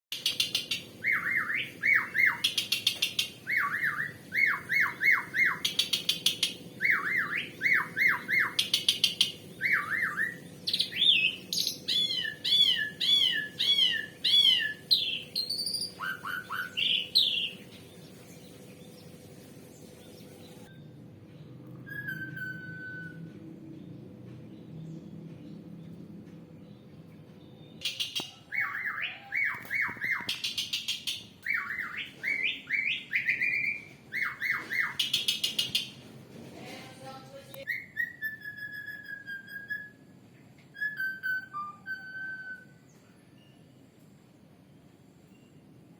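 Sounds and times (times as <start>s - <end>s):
starling singing: 0.2s - 19.2s, 27.8s - 36.0s
thin bird whistle: 21.7s - 23.3s, 37.7s - 43.7s.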